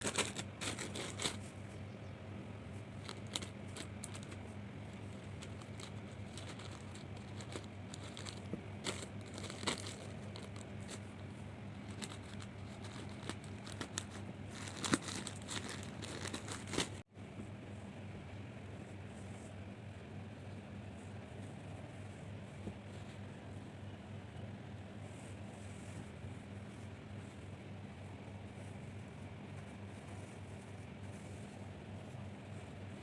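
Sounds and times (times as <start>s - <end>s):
packaging crinkling and tearing: 0.0s - 1.4s, 3.0s - 4.4s, 5.0s - 11.1s, 11.8s - 17.0s.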